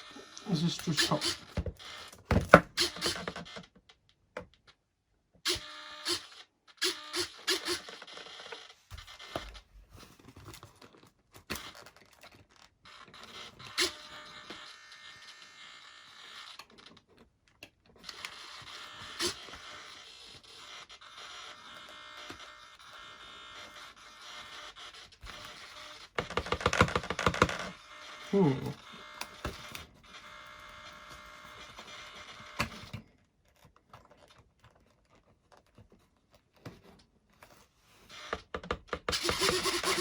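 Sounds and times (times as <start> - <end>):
servos whirring: 0.4 - 1.5.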